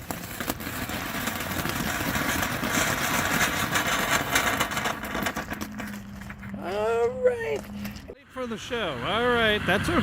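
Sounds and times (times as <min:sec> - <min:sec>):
firework hissing and crackling: 0:00.0 - 0:05.7.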